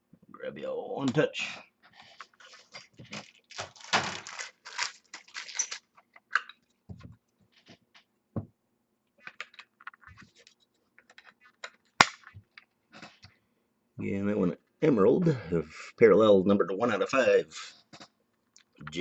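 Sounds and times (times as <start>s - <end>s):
card rustling and scraping: 1.8s - 5.8s.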